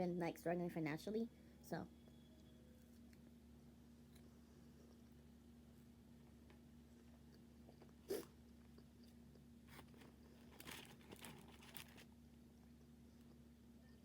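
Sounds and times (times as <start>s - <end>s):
steady hum: 0.0s - 14.0s
person crunching fried food: 7.0s - 12.1s.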